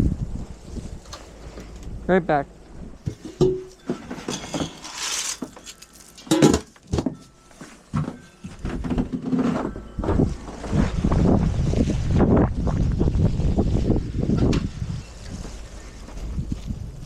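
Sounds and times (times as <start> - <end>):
hard objects knocking and clinking: 3.1 - 7.2.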